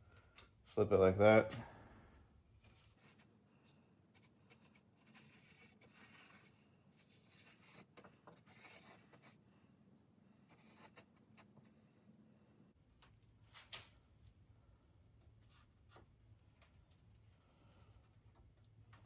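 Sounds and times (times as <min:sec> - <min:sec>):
marker scratching on metal: 0:04.1 - 0:09.4, 0:10.5 - 0:11.6.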